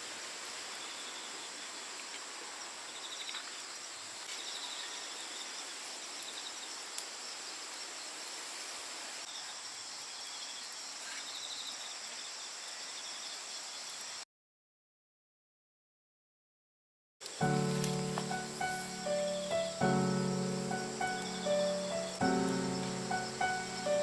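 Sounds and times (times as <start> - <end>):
insect chirring: 17.3 - 24.0.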